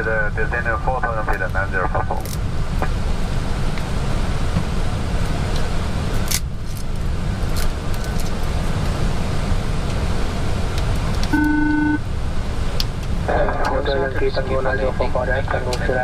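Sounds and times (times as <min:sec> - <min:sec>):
aircraft cockpit rushing noise: 0:00.0 - 0:16.0
short beep: 0:11.3 - 0:12.0.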